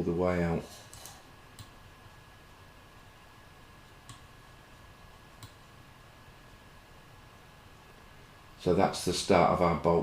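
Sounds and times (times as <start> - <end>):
faint room hiss: 0.0 - 10.0
computer mouse clicks: 0.9 - 1.8, 4.0 - 4.3, 5.4 - 5.7.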